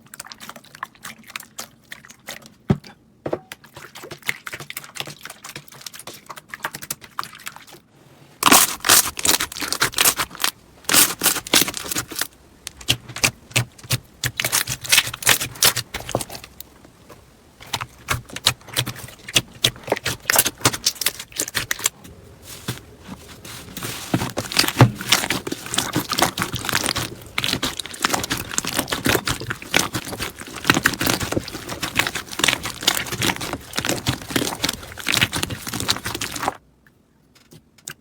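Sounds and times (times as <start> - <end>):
slime crackling and popping: 8.4 - 16.7, 17.6 - 22.0, 23.4 - 36.6.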